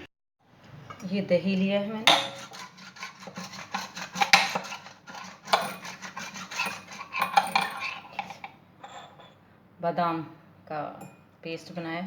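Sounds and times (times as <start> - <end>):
spoon and dishes clinking: 6.6 - 9.4.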